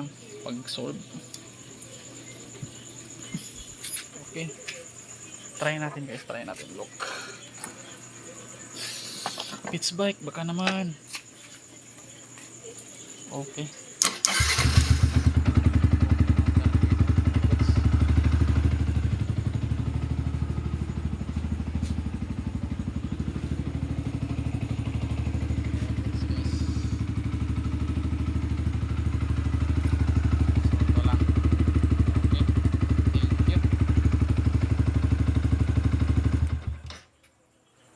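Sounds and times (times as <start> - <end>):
motorcycle engine idling: 14.3 - 36.8.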